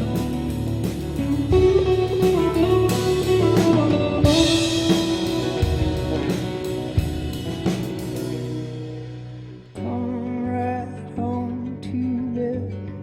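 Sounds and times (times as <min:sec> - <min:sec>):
drum kit: 0:00.0 - 0:10.1
ringing guitars: 0:00.0 - 0:11.8.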